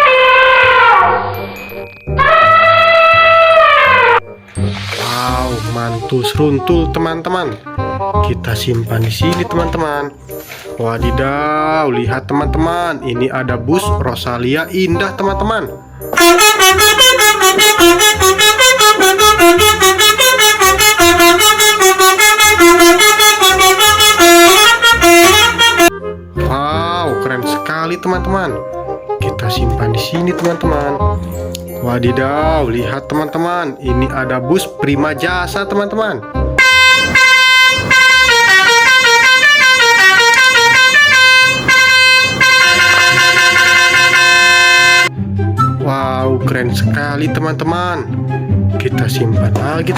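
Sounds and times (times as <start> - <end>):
horn-like tune: 0.0 - 6.2, 16.2 - 26.0, 36.6 - 45.1
pulsing bass: 16.2 - 26.0, 36.5 - 45.5.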